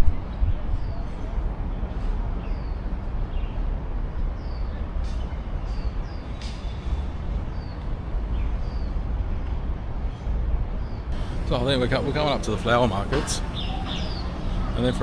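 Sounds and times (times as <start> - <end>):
low traffic rumble: 10.8 - 15.0
bird chirping: 11.1 - 15.0.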